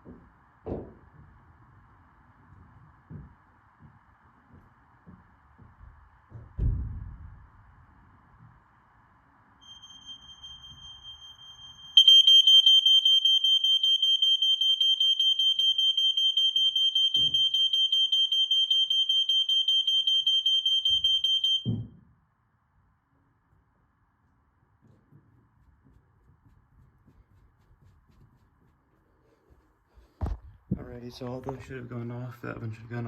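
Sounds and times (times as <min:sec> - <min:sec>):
smoke alarm horn fluttering: 0:09.6 - 0:21.7
faint high-pitched alarm tone: 0:09.6 - 0:22.0.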